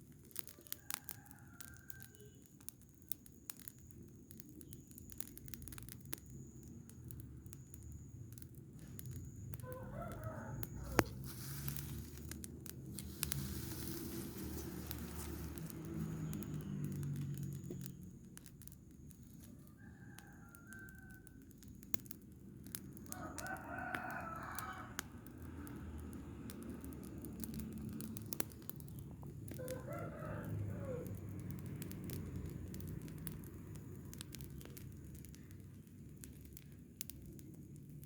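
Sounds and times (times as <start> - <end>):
rooster crowing: 0.5 - 2.4, 9.5 - 12.2, 19.4 - 21.5, 23.0 - 26.0, 29.5 - 32.2
low steady rumble: 6.7 - 19.2.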